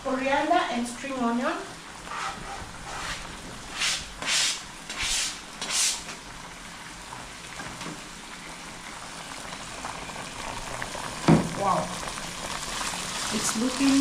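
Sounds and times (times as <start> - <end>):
pan cooking sizzle: 0.0 - 14.0
hissing stirring strokes: 1.9 - 6.3.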